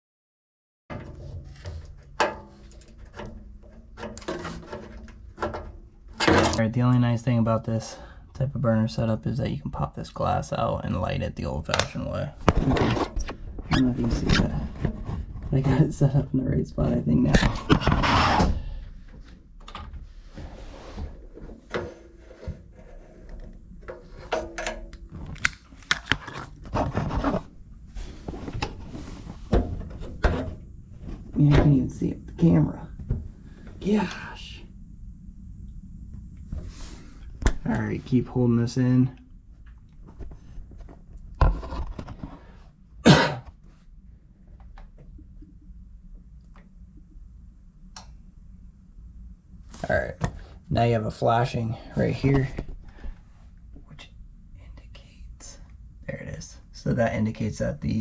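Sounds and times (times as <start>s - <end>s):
scraping and clicking handling noises: 0.9s - 6.6s, 17.4s - 31.6s
low steady hum: 0.9s - 58.0s.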